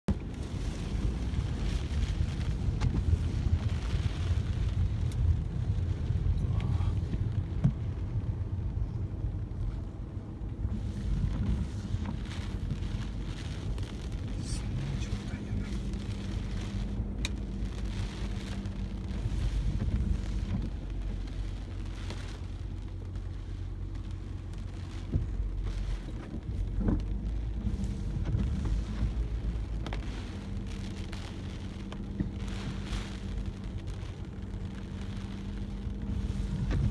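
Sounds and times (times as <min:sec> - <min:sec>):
driving rain: 0:00.1 - 0:36.9
gusting wind: 0:24.3 - 0:36.9.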